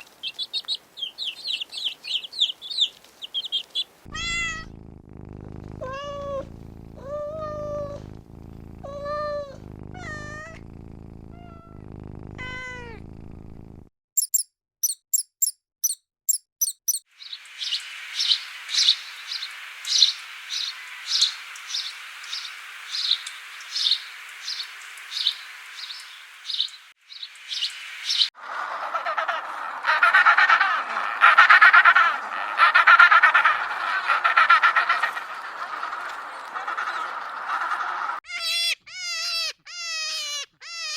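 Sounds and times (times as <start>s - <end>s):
rapid high chirping: 0.0s - 4.7s, 14.2s - 28.3s
cat meowing: 4.1s - 4.7s, 5.8s - 8.1s, 8.8s - 10.6s, 11.3s - 11.8s, 12.4s - 13.0s, 38.2s - 40.9s
steady hiss: 17.2s - 28.2s.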